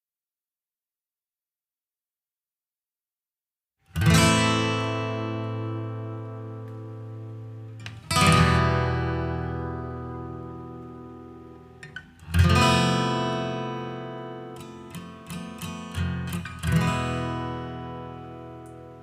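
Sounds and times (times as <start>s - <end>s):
acoustic guitar strumming: 3.9s - 19.0s.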